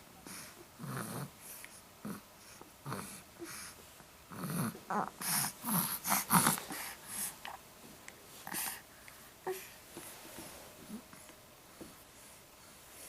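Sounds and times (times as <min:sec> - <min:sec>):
baby vocalizing and huffing: 0:02.0 - 0:07.6, 0:08.4 - 0:09.8.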